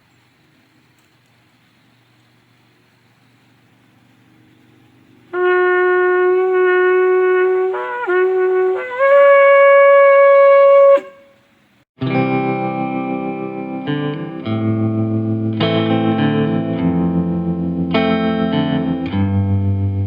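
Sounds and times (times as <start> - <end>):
shofar blowing: 5.4 - 11.4
guitar music: 12.0 - 20.0.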